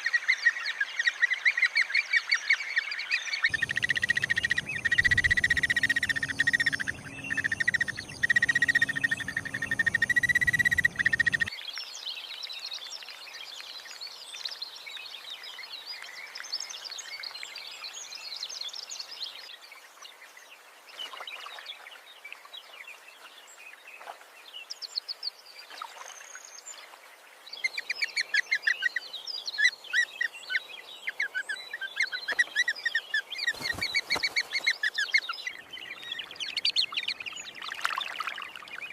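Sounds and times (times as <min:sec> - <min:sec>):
birds chirping and chattering: 0:03.5 - 0:11.5.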